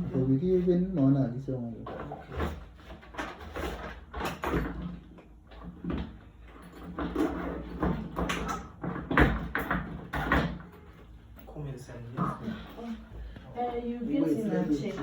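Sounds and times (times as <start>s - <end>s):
door clunking and knocking: 2.0s - 10.9s.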